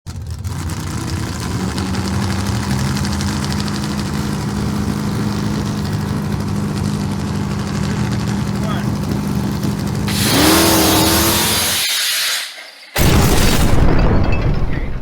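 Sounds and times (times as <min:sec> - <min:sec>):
truck engine idling: 0:00.1 - 0:11.8.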